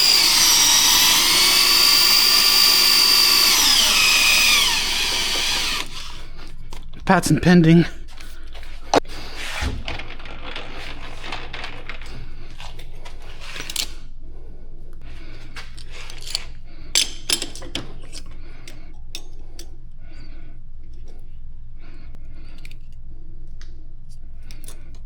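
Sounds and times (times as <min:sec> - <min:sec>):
metal tools clinking: 0:15.7 - 0:19.7.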